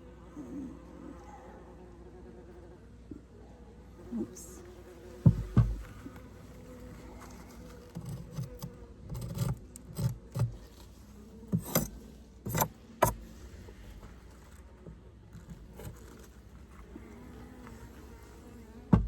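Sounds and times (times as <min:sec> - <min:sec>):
bees buzzing faintly: 0:00.0 - 0:19.0
wooden frames knocking and scraping: 0:05.2 - 0:06.1.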